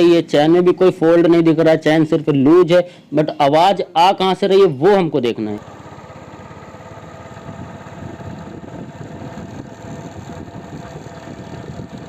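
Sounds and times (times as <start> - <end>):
motorcycle engine running: 5.6 - 12.0.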